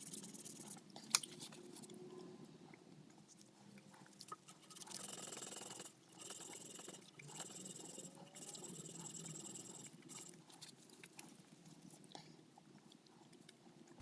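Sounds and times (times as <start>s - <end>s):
abrading strokes rasping on steel: 4.5s - 10.4s.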